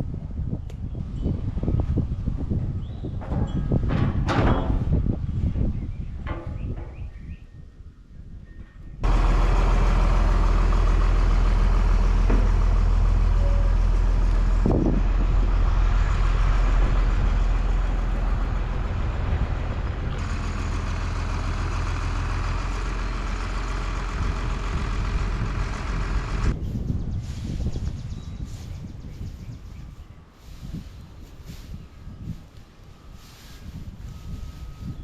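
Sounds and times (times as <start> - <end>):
engine running steadily: 9.0 - 26.6, 30.5 - 35.0.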